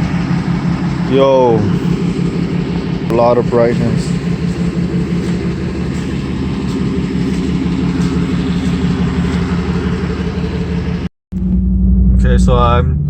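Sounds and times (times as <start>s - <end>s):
engine idling: 0.0s - 13.0s.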